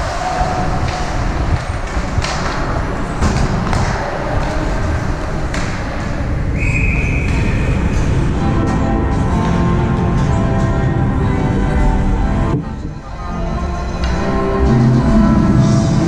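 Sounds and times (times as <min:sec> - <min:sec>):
hockey sticks and puck clacking: 0:00.0 - 0:09.6, 0:13.8 - 0:14.7
low rink rumble: 0:00.0 - 0:16.0
referee's whistle: 0:06.6 - 0:07.8.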